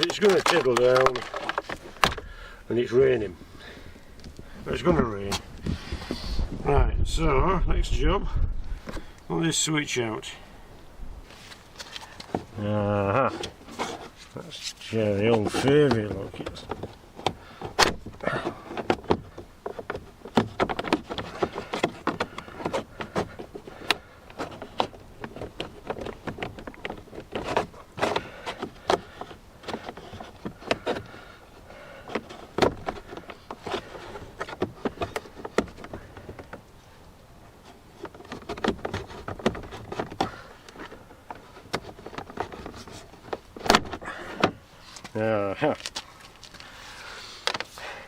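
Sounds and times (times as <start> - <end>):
plastic clips clicking and creaking: 0.0 - 2.3.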